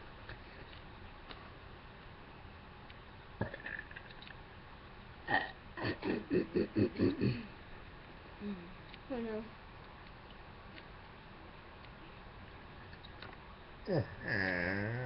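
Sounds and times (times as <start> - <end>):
girl burping: 5.3 - 5.6.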